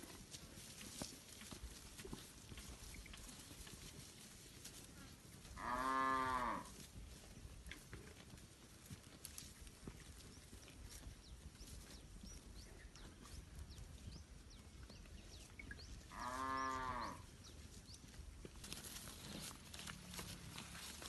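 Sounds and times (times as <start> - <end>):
cow mooing: 5.6 - 6.7, 16.1 - 17.2.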